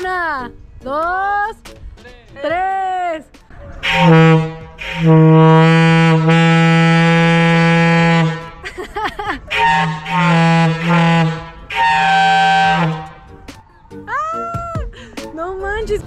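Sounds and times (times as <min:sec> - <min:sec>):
loud deep horn blasts: 0:03.8 - 0:08.6, 0:09.5 - 0:13.4.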